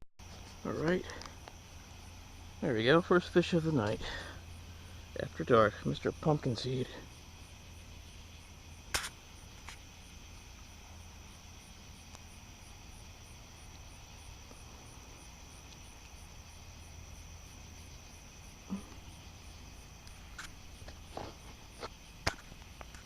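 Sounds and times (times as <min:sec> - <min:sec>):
high pulsing insect call: 0:00.2 - 0:23.0
night insects and crickets singing: 0:00.2 - 0:23.0
sharp click: 0:08.9 - 0:09.8.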